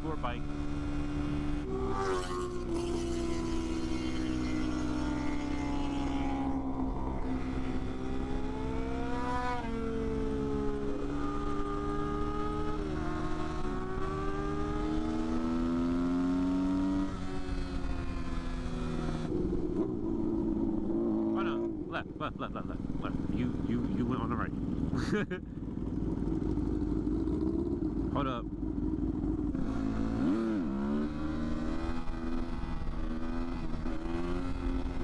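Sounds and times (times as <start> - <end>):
motorcycle engine accelerating: 0.0 - 35.0
wind and road noise: 0.0 - 35.0.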